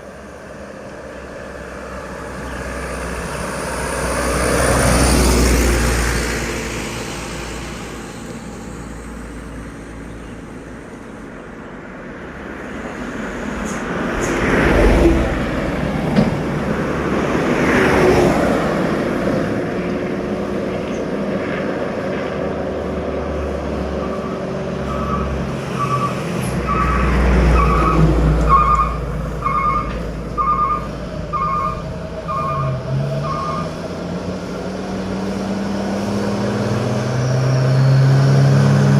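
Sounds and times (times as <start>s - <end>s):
traffic passing on highway: 0.0s - 38.9s
repeating beep: 27.7s - 33.7s.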